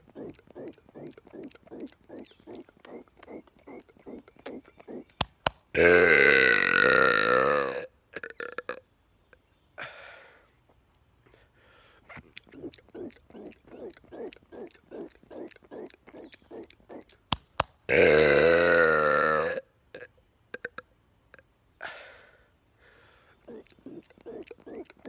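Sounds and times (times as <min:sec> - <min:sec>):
long loud burp: 0:05.8 - 0:08.8, 0:17.9 - 0:20.8.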